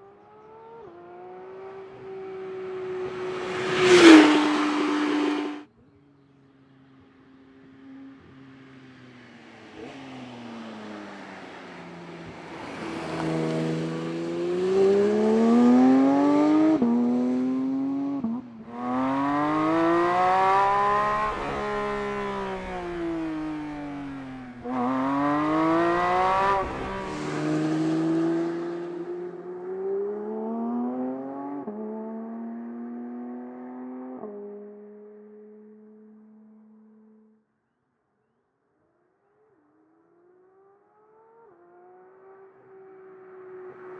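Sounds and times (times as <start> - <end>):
car engine revving: 1.3 - 5.6, 12.4 - 30.3.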